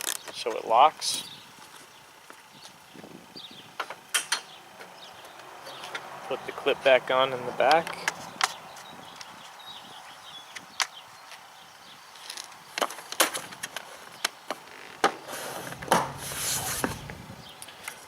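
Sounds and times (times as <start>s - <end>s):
scraping rustle: 12.1s - 18.0s.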